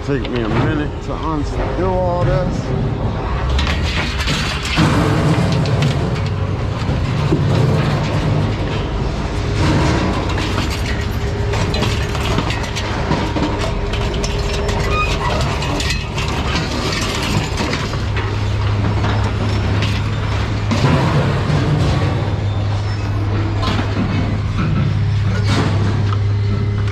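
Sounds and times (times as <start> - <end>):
metal clanks: 3.4 - 26.9.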